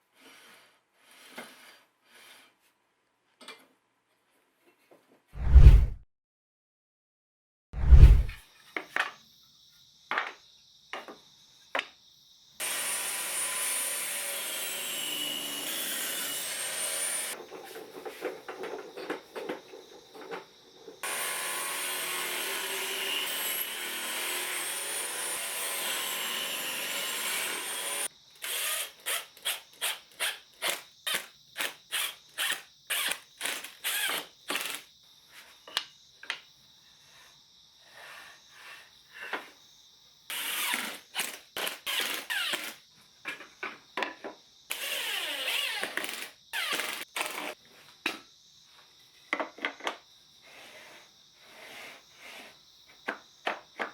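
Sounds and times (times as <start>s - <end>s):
small power drill whining: 21.0s - 34.9s, 40.3s - 42.8s, 44.7s - 47.6s
hand sawing or sanding wood: 50.4s - 52.6s.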